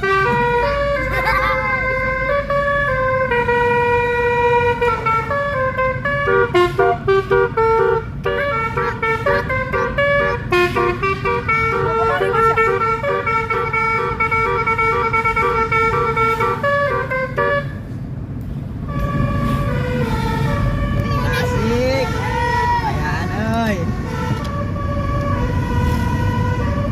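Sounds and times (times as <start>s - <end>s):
musical air horn tune: 3.3s - 17.8s.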